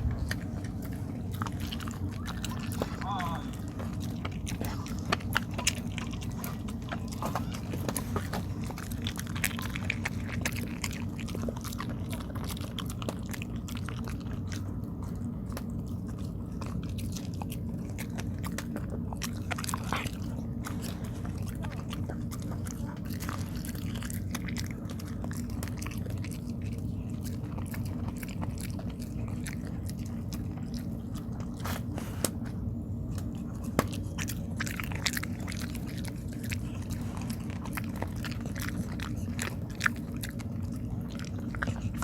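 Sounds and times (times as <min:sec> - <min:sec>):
dog chewing: 0:00.0 - 0:42.0
steady low hum: 0:00.0 - 0:42.0.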